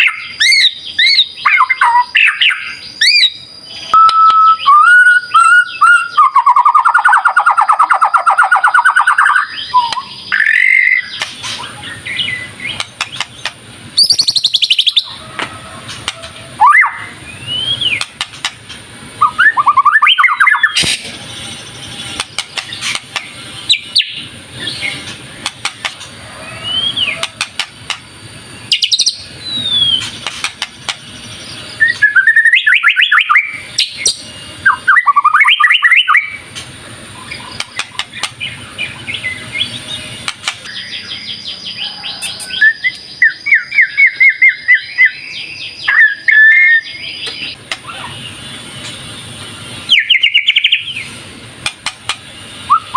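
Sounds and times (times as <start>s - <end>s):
bird singing varied whistles: 0.0s - 12.8s, 14.0s - 15.2s, 16.6s - 18.1s, 19.2s - 21.0s, 28.6s - 30.2s, 31.2s - 36.4s, 42.1s - 48.2s, 49.8s - 51.1s, 52.6s - 52.9s.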